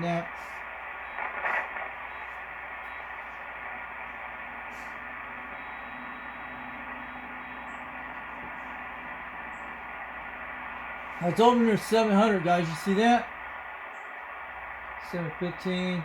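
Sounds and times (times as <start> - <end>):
garbled radio burst: 0.0 - 16.0
radio hiss: 0.0 - 16.0
faint low tone: 4.3 - 9.7.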